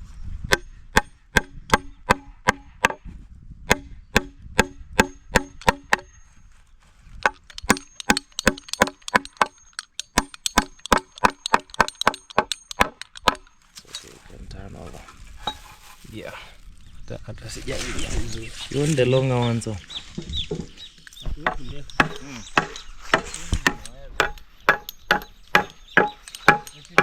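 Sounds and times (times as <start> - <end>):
hammer driving nails into wood: 0.5 - 3.1, 3.7 - 6.1, 7.2 - 13.6, 21.4 - 27.0.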